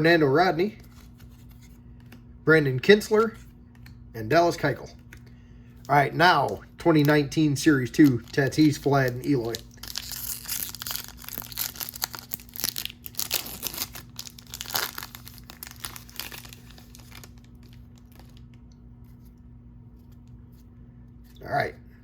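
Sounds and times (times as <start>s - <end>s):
foil wrapper tearing and crinkling: 7.8s - 18.6s.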